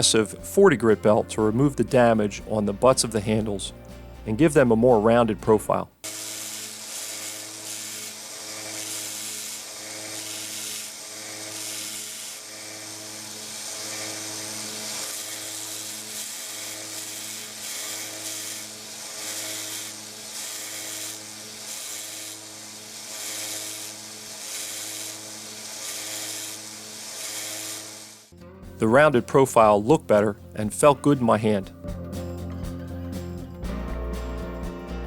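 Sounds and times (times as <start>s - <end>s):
belt sander motor hum: 6.0s - 28.3s
rasping sanding of wood: 6.1s - 28.2s.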